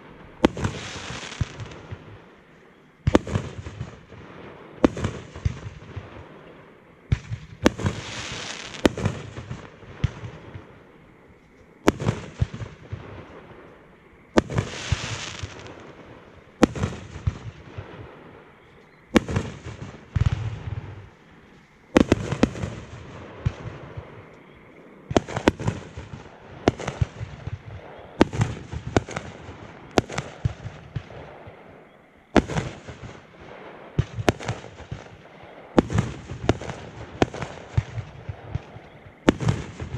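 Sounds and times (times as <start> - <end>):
firework hiss: 0.0 - 2.1, 7.1 - 10.6, 14.3 - 18.5
firework bangs: 0.0 - 2.3, 3.0 - 10.8, 11.8 - 21.2, 21.8 - 24.3, 25.1 - 39.9.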